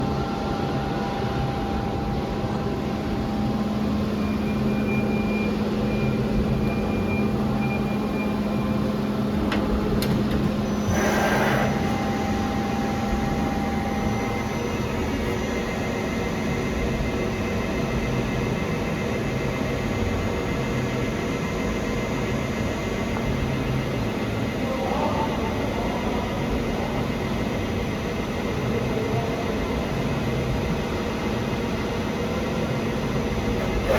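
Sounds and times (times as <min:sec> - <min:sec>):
lathe machine hum: 0:08.4 - 0:24.5, 0:29.8 - 0:33.9.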